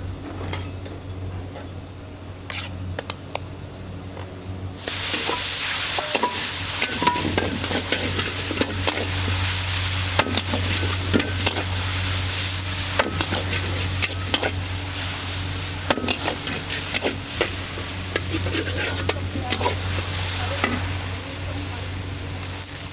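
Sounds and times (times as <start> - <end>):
steady low hum: 0.0 - 22.9
noodles sizzling in a wok: 4.8 - 22.9
metal spatula scraping a pan: 4.9 - 20.9.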